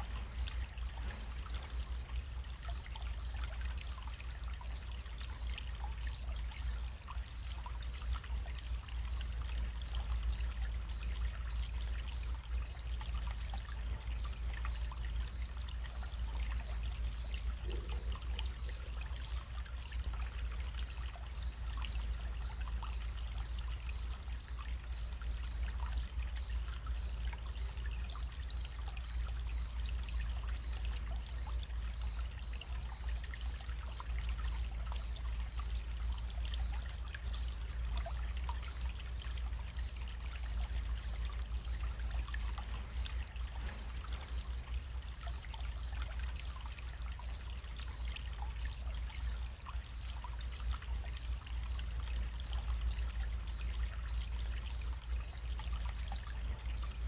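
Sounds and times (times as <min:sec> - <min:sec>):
stream trickling and splashing: 0:00.0 - 0:57.0.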